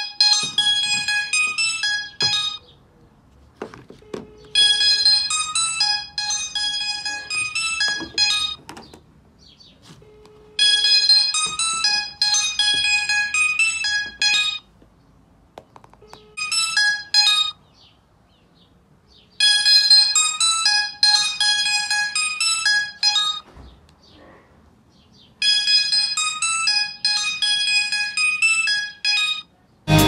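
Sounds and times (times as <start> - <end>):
phone ringtone melody: 0.0 - 2.7, 4.3 - 8.7, 10.6 - 14.7, 16.3 - 17.7, 19.4 - 23.5, 25.4 - 30.0.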